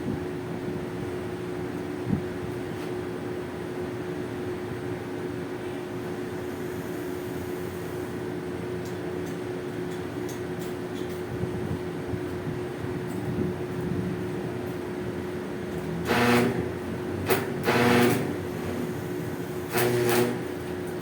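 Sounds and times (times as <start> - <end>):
machine humming: 15.7 - 20.7.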